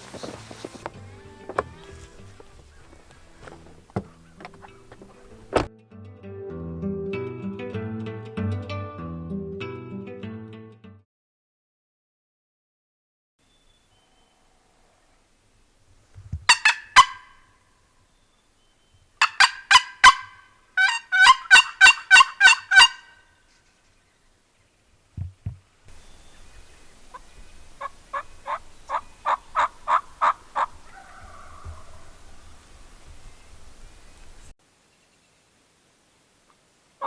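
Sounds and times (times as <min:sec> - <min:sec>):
turkey yelping: 0:16.5 - 0:17.5, 0:19.2 - 0:23.2, 0:27.1 - 0:32.6.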